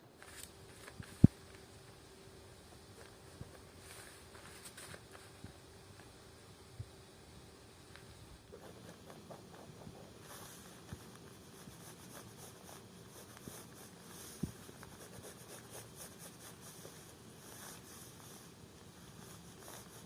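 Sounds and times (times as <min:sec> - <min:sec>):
scratchy marking strokes on fabric: 0:08.5 - 0:20.0.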